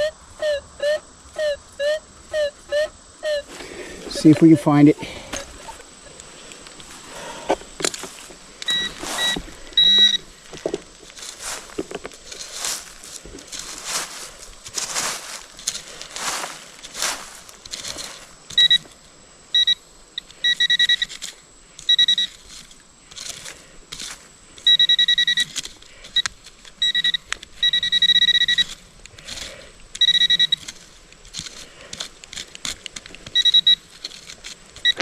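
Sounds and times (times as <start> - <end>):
dirt and leaves scraping: 3.4 - 19.2, 22.2 - 24.7, 30.5 - 35.0
metal detector pinpointer beeping: 4.1 - 5.8, 8.6 - 10.3, 17.9 - 18.9, 19.5 - 22.4, 24.6 - 28.8, 30.0 - 30.8, 33.2 - 33.9, 34.8 - 35.0.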